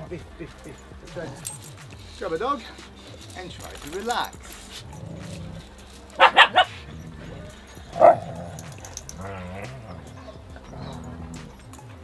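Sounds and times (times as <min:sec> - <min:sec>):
dog whining: 0:04.5 - 0:11.8
dog barking: 0:04.8 - 0:11.6.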